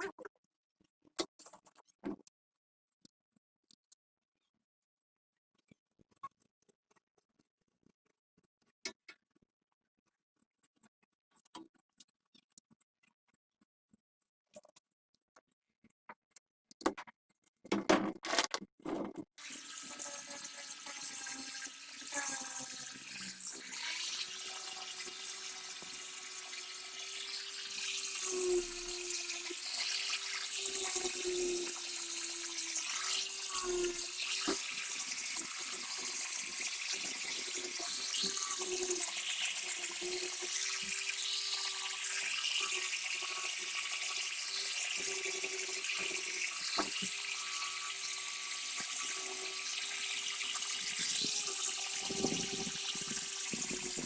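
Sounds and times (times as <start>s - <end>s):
sharp knocks and clicks: 16.1s - 19.2s
water running from a tap: 19.4s - 54.0s.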